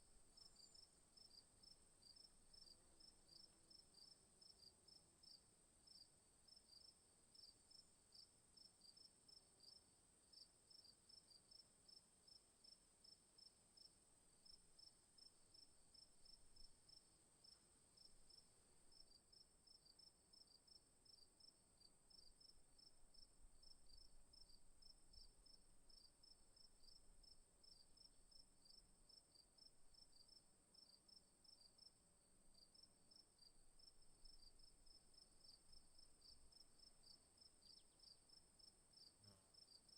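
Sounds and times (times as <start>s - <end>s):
insect chirping: 0.3s - 4.2s, 13.8s - 32.0s, 32.6s - 39.9s.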